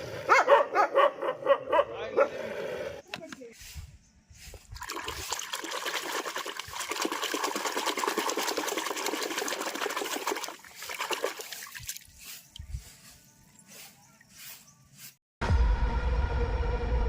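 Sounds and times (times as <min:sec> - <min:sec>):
water trickling and splashing: 0:04.5 - 0:14.6.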